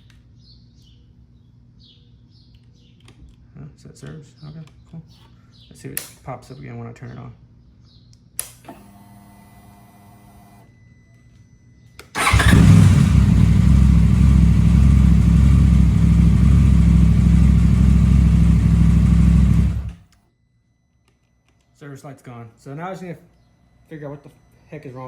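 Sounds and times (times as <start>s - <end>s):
motorcycle engine idling: 12.2s - 20.0s.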